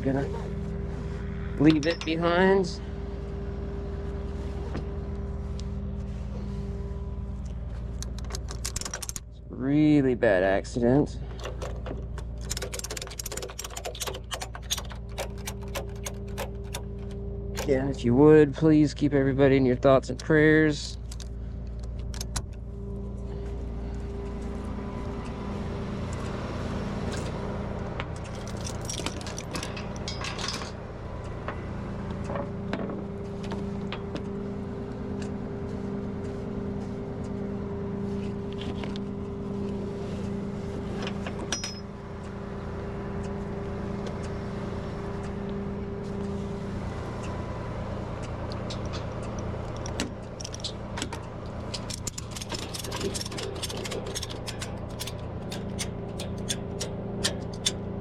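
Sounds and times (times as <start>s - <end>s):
truck engine running: 0.0s - 58.0s
metallic clinks and rattles: 1.6s - 2.4s, 11.3s - 17.8s, 27.1s - 27.4s, 28.2s - 30.8s, 41.4s - 41.9s, 48.6s - 57.8s.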